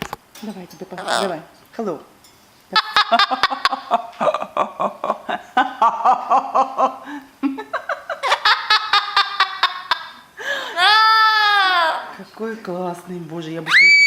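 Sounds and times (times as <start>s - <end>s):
person laughing: 2.8s - 12.0s.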